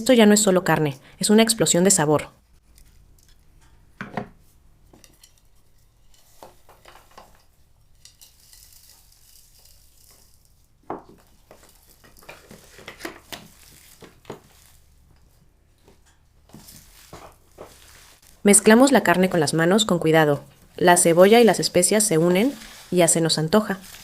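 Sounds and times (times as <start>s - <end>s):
faint hiss: 16.6s - 24.0s.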